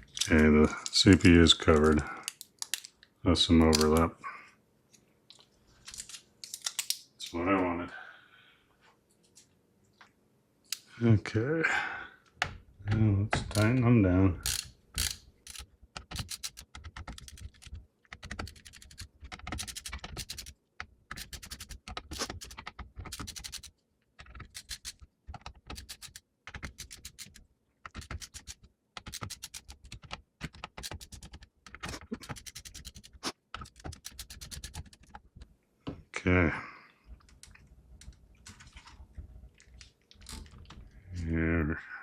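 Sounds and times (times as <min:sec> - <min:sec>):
ratcheting screwdriver clicking: 0:14.4 - 0:15.6.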